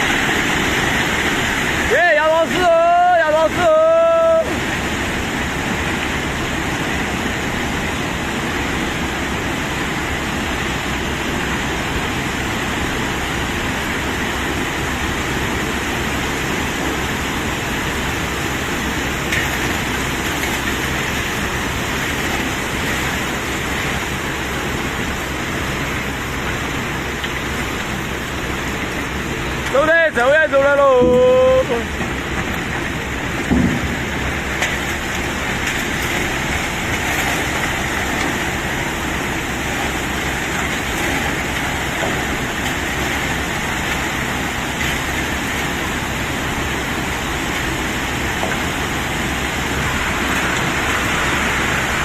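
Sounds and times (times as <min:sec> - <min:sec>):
truck unloading cobblestones: 0:00.0 - 0:52.0.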